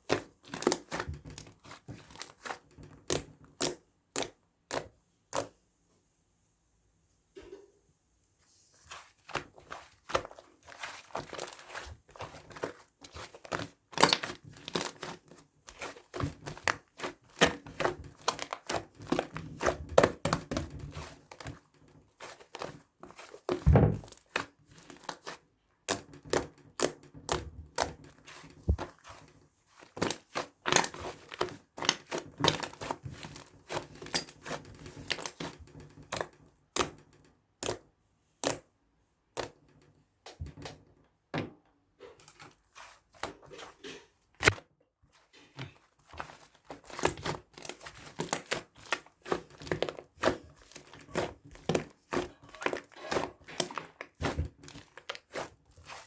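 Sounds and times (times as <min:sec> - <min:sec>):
crinkling: 0:08.7 - 0:36.2, 0:42.3 - 0:56.0
dull thuds: 0:23.6 - 0:24.1.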